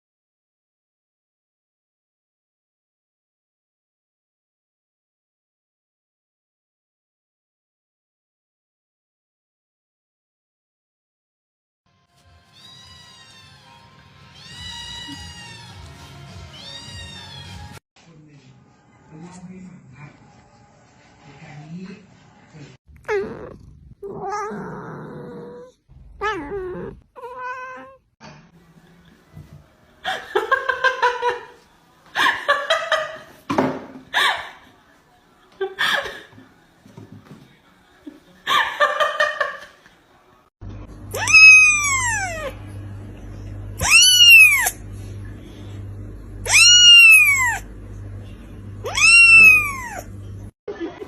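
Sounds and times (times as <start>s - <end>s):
cat yowling: 14.3s - 15.8s, 23.1s - 28.0s, 41.1s - 42.6s, 43.8s - 44.8s, 46.4s - 47.7s, 48.8s - 50.1s.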